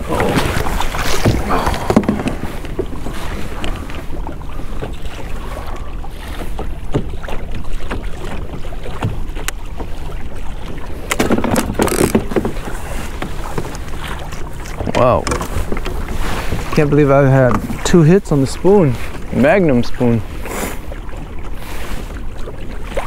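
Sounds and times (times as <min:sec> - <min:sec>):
water lapping at kayak: 0:00.0 - 0:23.0
small knocks: 0:11.1 - 0:13.7.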